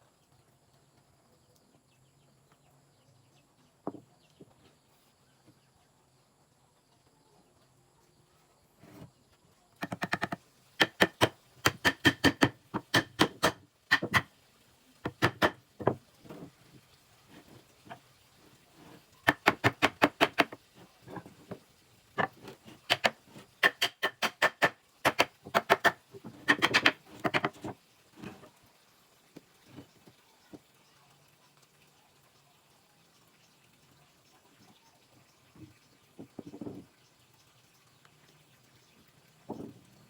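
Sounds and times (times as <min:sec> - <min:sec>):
rapid sharp knocks: 0:09.8 - 0:14.3, 0:15.1 - 0:16.0, 0:19.3 - 0:20.6, 0:22.2 - 0:27.7.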